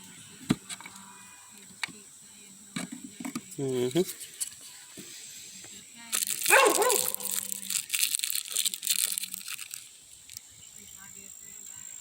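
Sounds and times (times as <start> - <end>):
rustling handling noise: 2.9 - 10.5
dog barking: 6.4 - 7.4.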